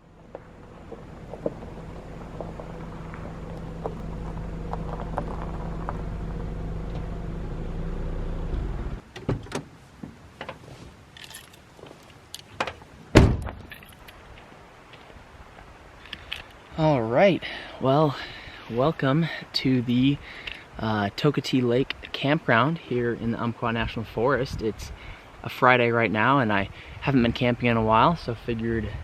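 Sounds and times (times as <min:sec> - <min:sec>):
car engine humming: 0:00.0 - 0:09.1
loud thunk: 0:13.1 - 0:13.7.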